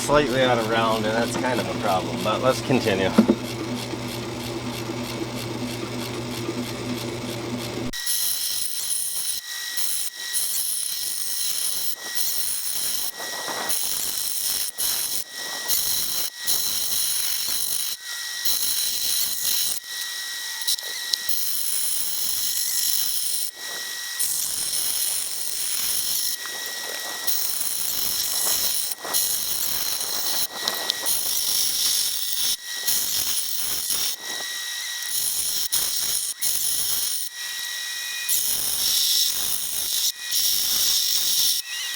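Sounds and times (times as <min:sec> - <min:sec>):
axe grinding on grindstone: 0:02.9 - 0:03.4.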